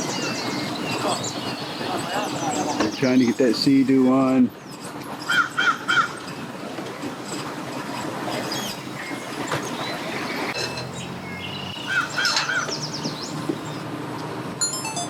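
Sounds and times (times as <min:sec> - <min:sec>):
bird chirps: 0:00.0 - 0:04.8, 0:08.4 - 0:13.8
outdoor background noise: 0:00.0 - 0:15.0
crow cawing: 0:11.7 - 0:12.8.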